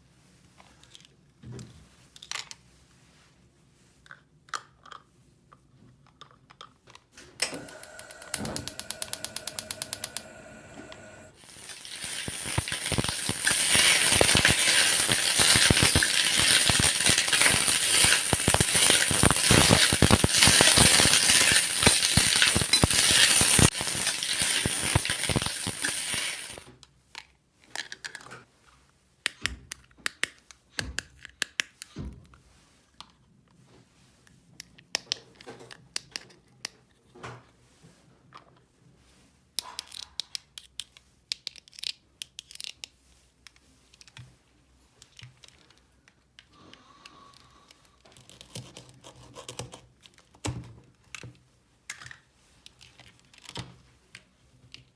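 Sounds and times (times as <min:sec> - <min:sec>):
mechanical ratcheting clicks: 0:07.4 - 0:26.6.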